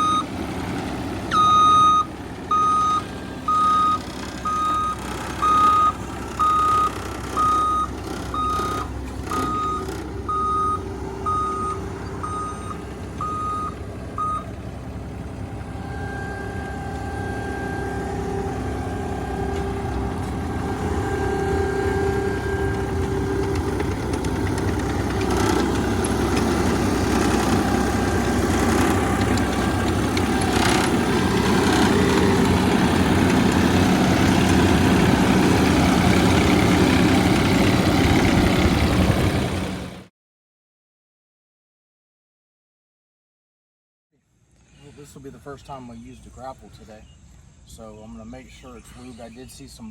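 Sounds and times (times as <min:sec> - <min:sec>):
vehicle backup alarm beeping: 0:00.0 - 0:38.3
heavy vehicle engine running: 0:00.0 - 0:40.1.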